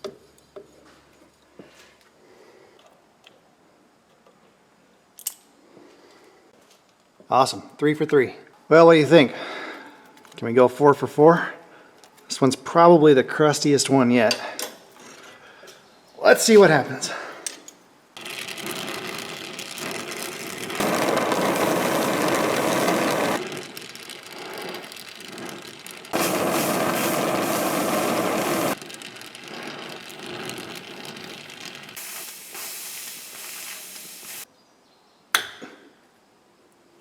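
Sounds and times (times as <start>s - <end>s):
gas torch hissing: 18.2s - 34.5s.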